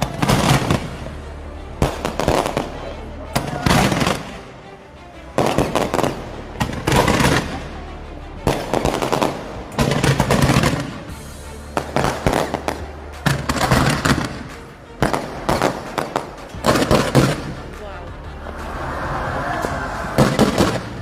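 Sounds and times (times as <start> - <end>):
fireworks crackling and banging: 0.0 - 1.1, 1.8 - 2.8, 3.4 - 4.4, 5.4 - 7.8, 8.4 - 18.0, 20.1 - 21.0.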